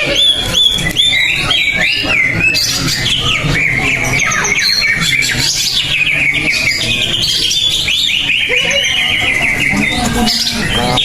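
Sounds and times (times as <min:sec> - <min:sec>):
bird singing whistled notes: 0:00.1 - 0:11.0.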